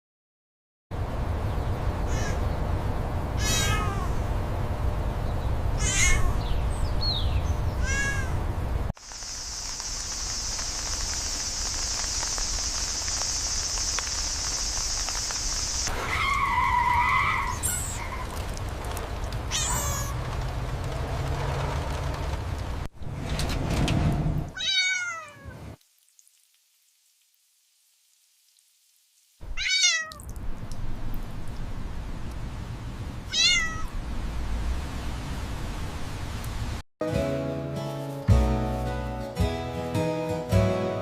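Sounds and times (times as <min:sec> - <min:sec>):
cat meowing: 0:03.4 - 0:04.2, 0:05.8 - 0:06.4, 0:07.8 - 0:08.4, 0:19.5 - 0:20.2, 0:24.6 - 0:25.6, 0:29.5 - 0:30.2, 0:33.3 - 0:33.9
steady high hiss: 0:09.0 - 0:17.0.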